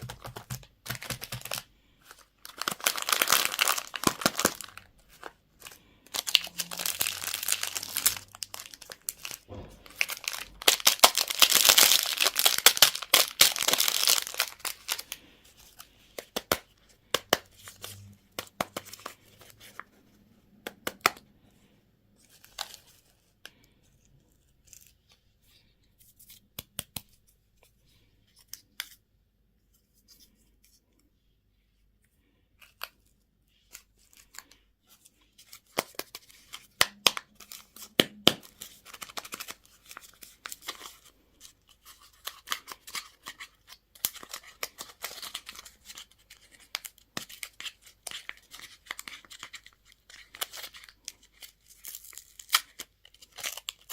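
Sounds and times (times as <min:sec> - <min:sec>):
packaging clicks and taps: 0:00.0 - 0:01.6
packaging being torn open: 0:00.1 - 0:01.6, 0:02.4 - 0:15.1, 0:46.7 - 0:53.9.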